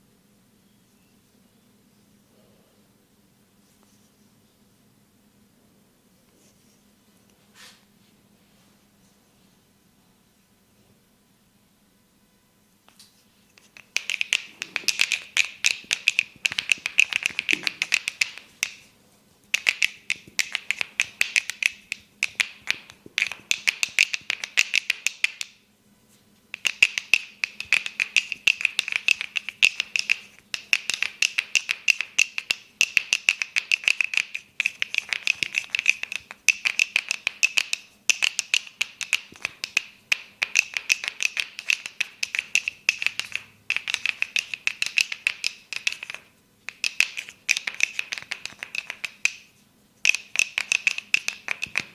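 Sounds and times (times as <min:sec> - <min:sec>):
hands striking head percussively: 0:13.6 - 0:18.9, 0:19.5 - 0:25.6, 0:26.5 - 0:51.9.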